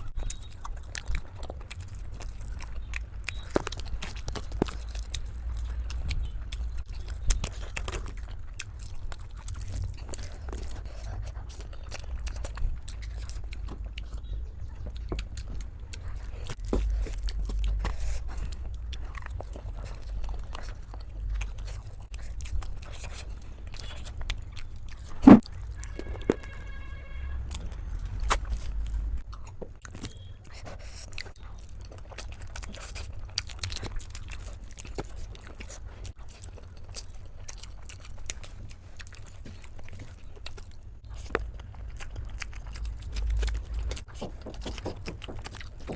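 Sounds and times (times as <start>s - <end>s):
food crunches: 0.0s - 14.3s, 27.5s - 45.9s
chewing and biting: 0.0s - 45.9s.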